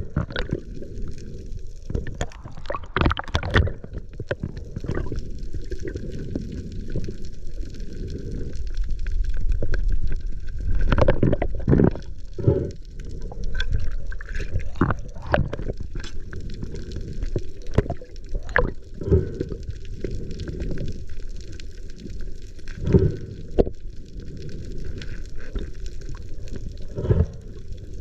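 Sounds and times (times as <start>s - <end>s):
muffled underwater rumble: 0.0s - 28.0s
bubbling and knocking bursts: 1.9s - 5.1s, 10.8s - 12.1s, 13.6s - 16.1s.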